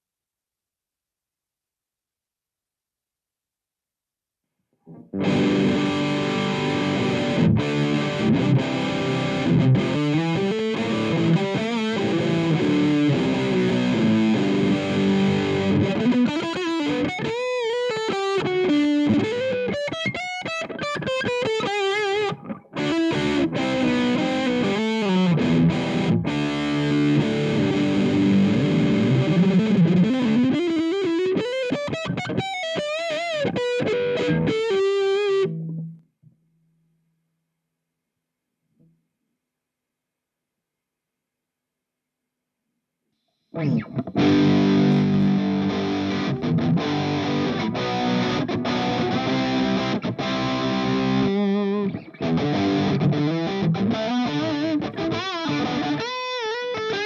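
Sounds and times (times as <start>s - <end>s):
distorted electric guitar: 4.8s - 36.1s, 43.4s - 57.0s.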